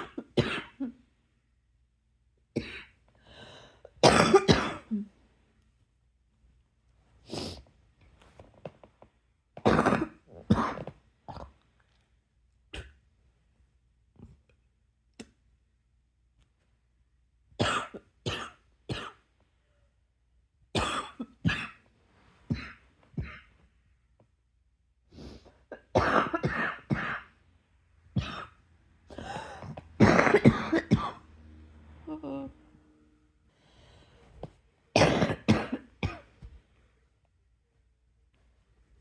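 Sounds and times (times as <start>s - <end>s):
person coughing hard: 0.0s - 1.0s, 2.6s - 3.0s, 4.0s - 5.1s, 9.6s - 11.5s, 17.6s - 19.2s, 20.8s - 21.8s, 25.7s - 27.4s, 28.2s - 31.2s, 35.0s - 36.3s.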